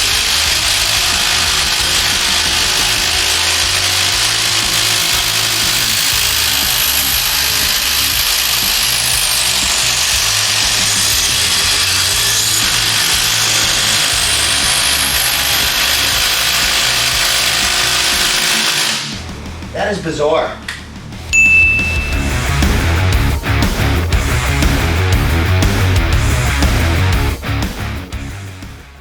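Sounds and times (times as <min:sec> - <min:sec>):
impact drivers hammering: 0:00.0 - 0:19.2.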